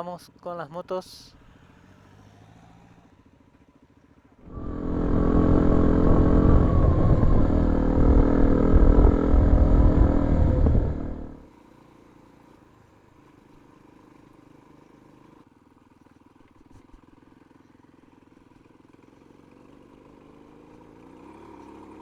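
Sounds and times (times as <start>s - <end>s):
distant motorcycles humming: 4.5s - 11.5s
motorcycle passing by: 4.5s - 11.5s.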